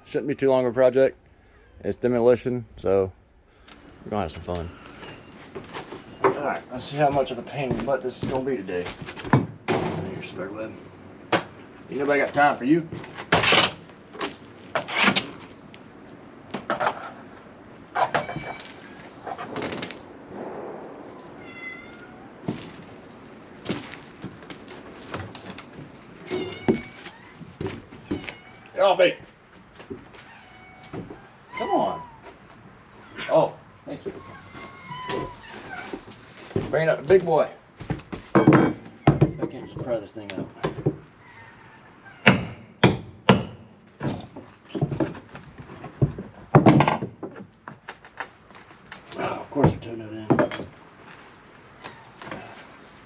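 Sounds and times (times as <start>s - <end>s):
cat meowing: 1.4s - 1.8s, 18.0s - 19.0s, 21.2s - 22.5s, 26.2s - 28.8s, 30.2s - 32.2s
sharp knocks and clatters: 37.8s - 41.1s, 42.2s - 47.9s
hammer striking wood: 42.2s - 43.7s.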